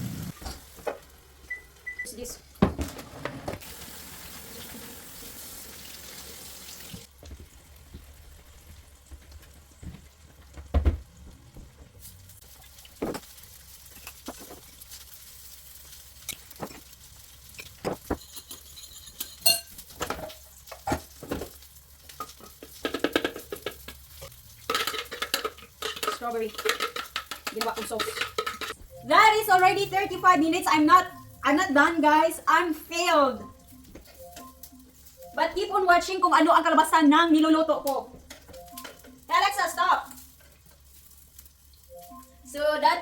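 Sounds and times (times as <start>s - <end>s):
pan sizzling: 3.6s - 8.6s, 12.0s - 43.0s
utensil clinking against cookware: 17.6s - 21.1s, 24.6s - 28.8s.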